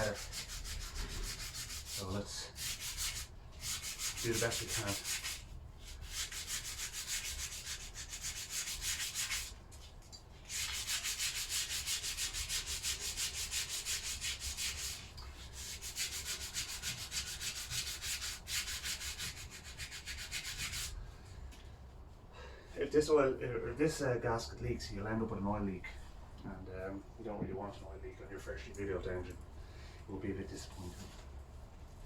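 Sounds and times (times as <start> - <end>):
sanding block rasping on metal: 0.0 - 9.6, 10.5 - 21.0.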